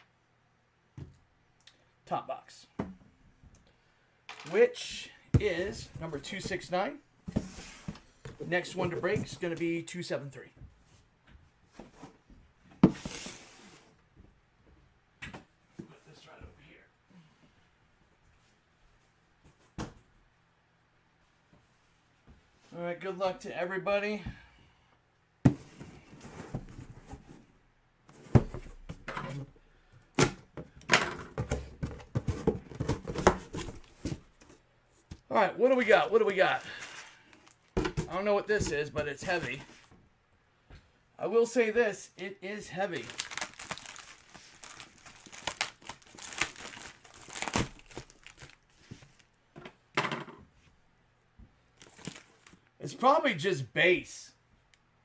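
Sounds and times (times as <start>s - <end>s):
cardboard rustling: 5.4s - 9.6s, 31.3s - 35.2s, 42.9s - 49.2s, 51.8s - 52.6s
box knocks and thuds: 28.2s - 29.2s, 30.2s - 34.4s, 37.8s - 39.6s
wrapper crinkling and tearing: 42.9s - 48.7s, 51.8s - 52.6s.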